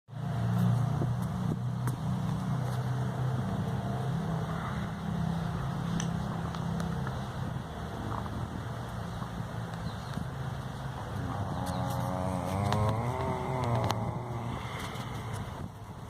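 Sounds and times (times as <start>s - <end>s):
sleeping pet rumbling: 11.2s - 15.7s.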